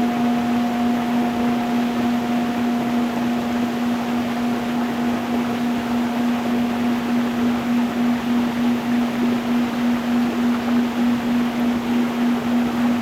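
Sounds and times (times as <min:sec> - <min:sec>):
singing bowl tone: 0:00.0 - 0:03.4.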